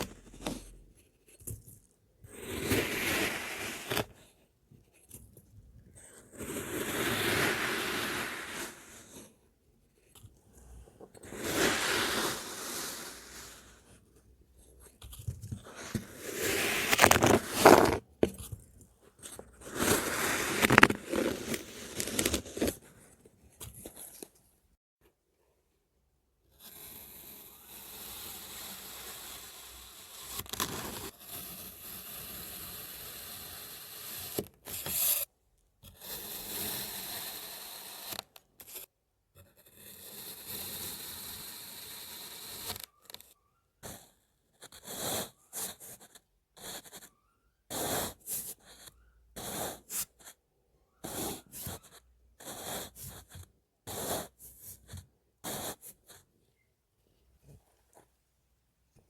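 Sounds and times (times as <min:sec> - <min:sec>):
sand scraping: 0:06.4 - 0:09.2, 0:11.2 - 0:13.8, 0:15.7 - 0:18.0, 0:19.6 - 0:22.8
crunchy strokes in sand: 0:11.3 - 0:13.6, 0:19.7 - 0:22.8.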